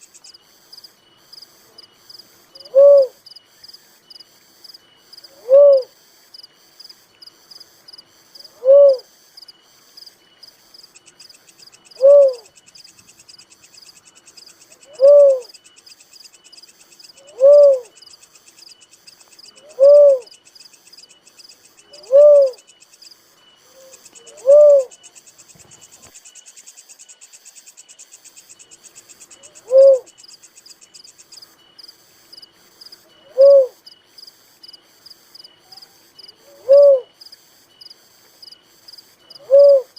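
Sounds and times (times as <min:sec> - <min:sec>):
insects chirring: 0:00.0 - 0:39.9
dove cooing: 0:02.5 - 0:03.2, 0:05.3 - 0:06.0, 0:08.4 - 0:09.1, 0:11.8 - 0:12.6, 0:14.7 - 0:15.6, 0:17.2 - 0:18.0, 0:19.5 - 0:20.3, 0:21.8 - 0:22.7, 0:23.6 - 0:25.0, 0:29.4 - 0:30.2, 0:33.2 - 0:33.8, 0:35.7 - 0:37.2, 0:39.3 - 0:39.9.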